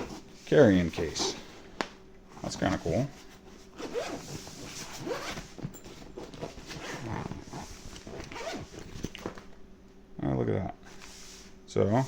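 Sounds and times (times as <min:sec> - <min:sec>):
zipper being pulled open: 0:03.8 - 0:09.3.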